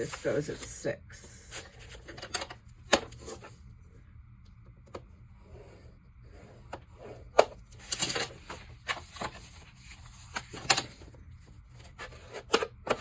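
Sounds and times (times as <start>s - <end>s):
paper rustling: 0.0s - 0.7s.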